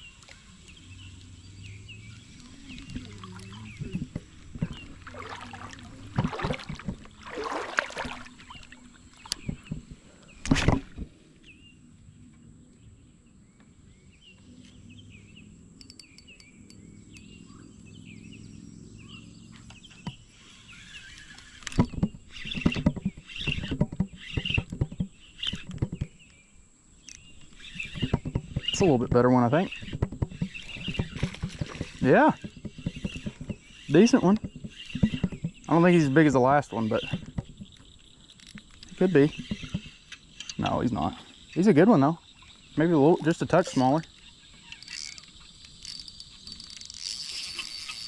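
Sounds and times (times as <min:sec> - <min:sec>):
water splashing: 0:02.4 - 0:09.7.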